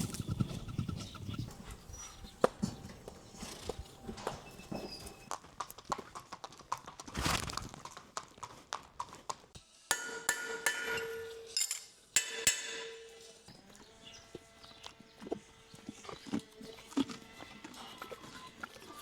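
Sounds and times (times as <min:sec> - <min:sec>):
horse hooves clip-clopping: 0:00.0 - 0:11.4
ringing metal clanks: 0:09.9 - 0:13.5.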